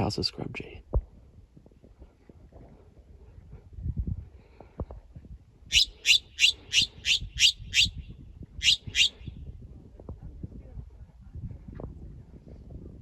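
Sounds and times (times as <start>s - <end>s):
jay harsh rasping calls: 5.7s - 8.0s, 8.6s - 9.3s.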